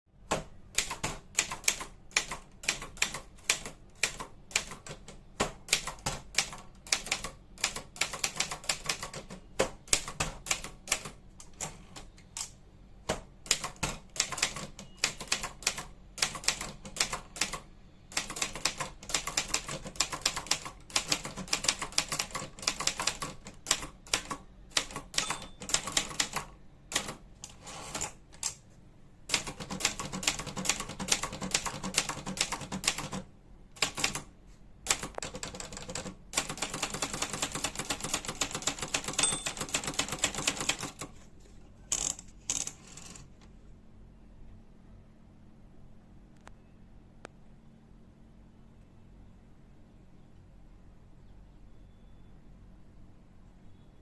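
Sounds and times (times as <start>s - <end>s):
typewriter key strikes: 24.2s - 26.4s, 36.4s - 40.9s.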